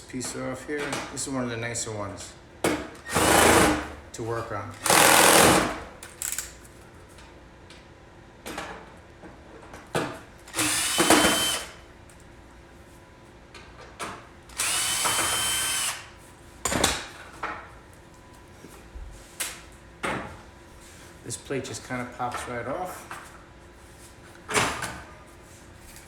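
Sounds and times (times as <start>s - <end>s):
power drill whining: 4.8s - 5.7s, 10.5s - 11.8s, 14.6s - 16.0s.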